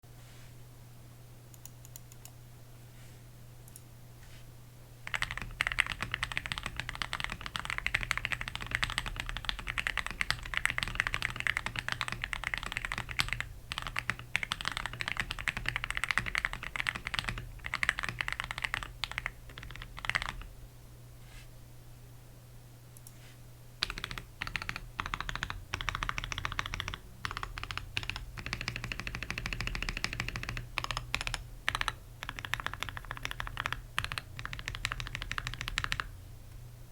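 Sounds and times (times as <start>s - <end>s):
faint low hum: 0.1s - 36.9s
mechanical keyboard typing: 5.1s - 20.5s, 23.8s - 36.1s.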